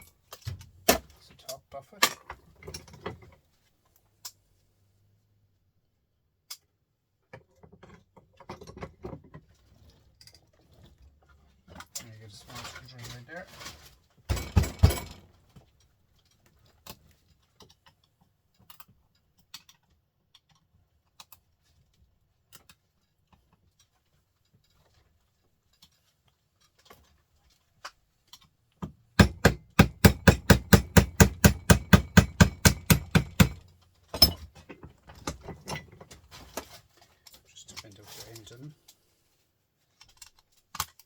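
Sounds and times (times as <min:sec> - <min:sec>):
knocks on small motor: 0:14.3 - 0:15.2, 0:28.8 - 0:33.6
fast run of sharp knocks: 0:29.2 - 0:33.6
small metallic clicks: 0:39.9 - 0:41.0.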